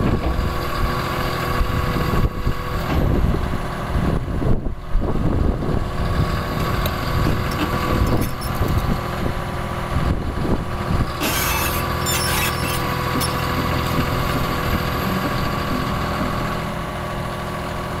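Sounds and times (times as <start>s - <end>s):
excavator diesel engine running: 0.0s - 18.0s.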